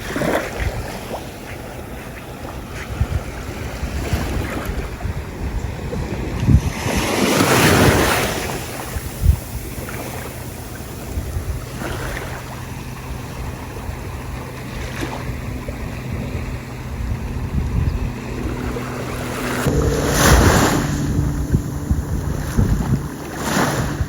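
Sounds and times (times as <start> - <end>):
wind buffeting microphone: 1.8 - 11.8, 15.2 - 24.0.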